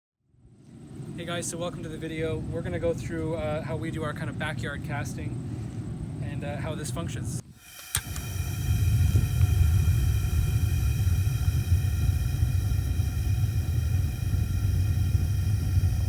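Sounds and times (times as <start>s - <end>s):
burner roaring: 7.6s - 16.0s.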